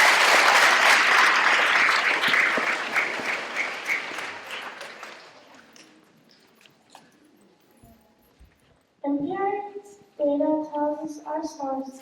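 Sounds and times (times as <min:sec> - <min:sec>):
audience applauding: 0:00.0 - 0:05.8.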